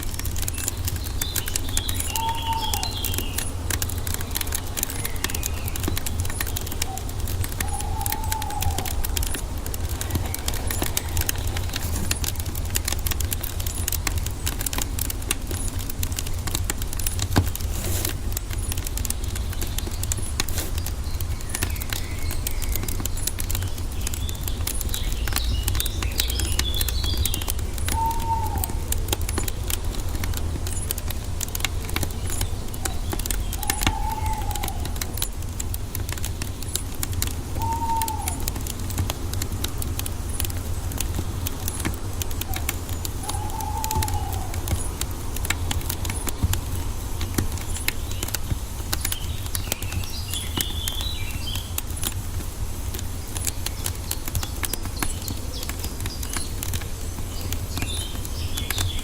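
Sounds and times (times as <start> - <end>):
wood fire crackling: 0.0 - 59.0
bird twittering: 0.5 - 13.9, 18.6 - 36.8, 37.4 - 38.9, 42.4 - 48.4.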